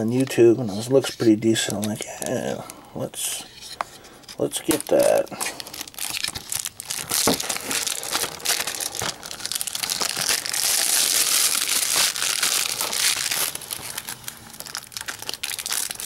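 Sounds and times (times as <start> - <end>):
plastic wrap crinkling: 4.4 - 16.0.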